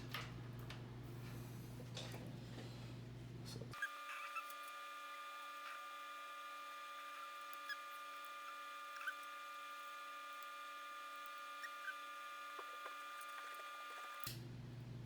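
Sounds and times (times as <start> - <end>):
steady electrical whine: 3.8 - 15.0.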